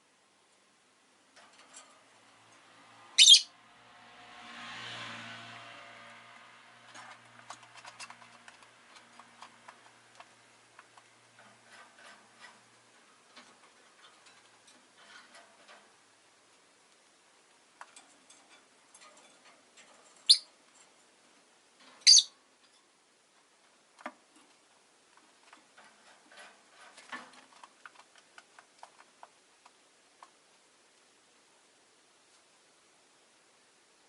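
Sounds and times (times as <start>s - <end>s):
quick small chirps and clicks: 3.2s - 3.4s, 22.0s - 22.3s
lovebirds shrieking: 3.2s - 3.5s.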